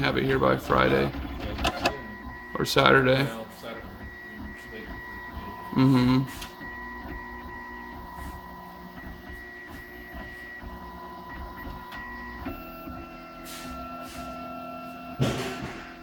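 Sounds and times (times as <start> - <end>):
stepper motors whining: 0.0 - 15.2
loud knock: 15.2 - 15.9.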